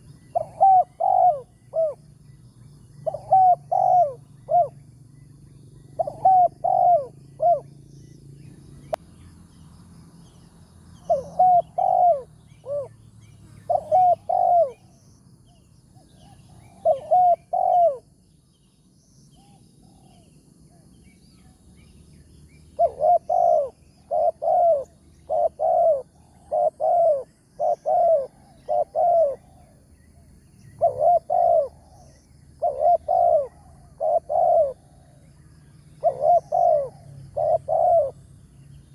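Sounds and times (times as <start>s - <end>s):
doves cooing: 0.0s - 2.4s, 3.0s - 7.9s, 11.0s - 13.0s, 13.6s - 14.9s, 16.0s - 18.2s, 22.7s - 38.5s.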